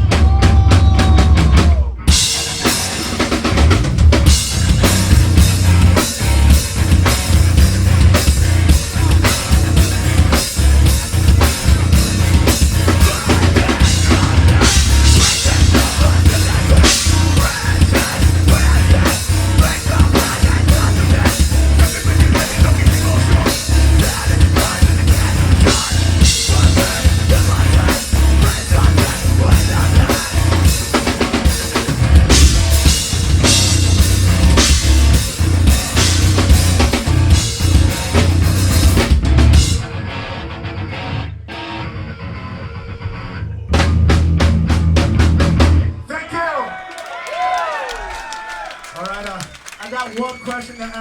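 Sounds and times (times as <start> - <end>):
fast drum kit hits: 0.0 - 39.9
metal band playing live: 0.0 - 46.0.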